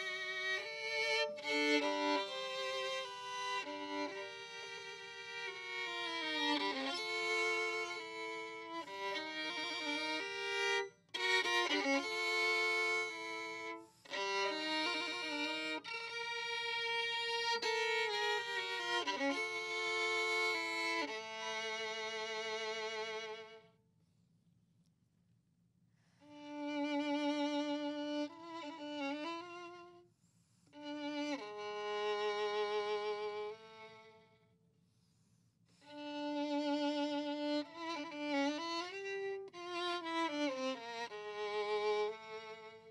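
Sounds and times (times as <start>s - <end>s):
solo violin playing: 0.0s - 23.7s, 26.2s - 30.0s, 30.7s - 34.4s, 35.8s - 42.9s.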